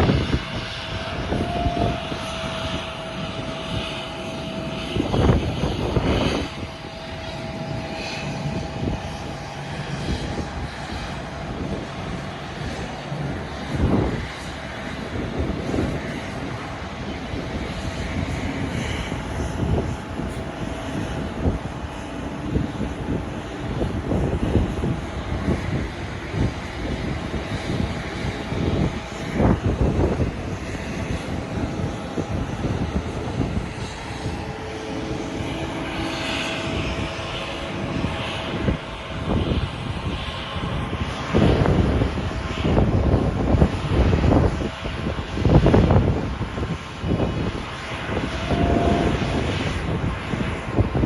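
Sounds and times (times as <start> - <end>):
jet engines roaring: 0.0 - 51.0
wind buffeting microphone: 0.0 - 51.0.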